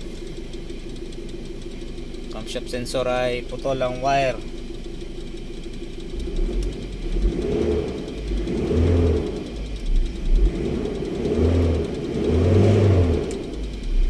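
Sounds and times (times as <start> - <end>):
diesel engine revving: 6.0 - 14.0.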